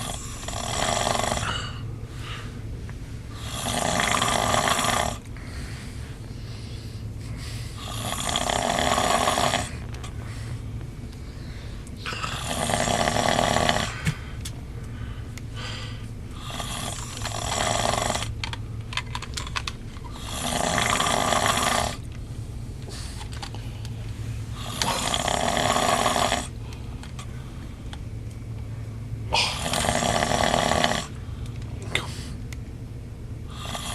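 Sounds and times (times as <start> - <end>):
man snoring loudly: 0.0 - 1.8, 3.3 - 5.2, 7.8 - 9.8, 12.0 - 14.0, 16.4 - 18.3, 20.1 - 22.0, 24.6 - 26.6, 29.3 - 31.2, 33.5 - 33.9
steady low hum: 0.0 - 33.9.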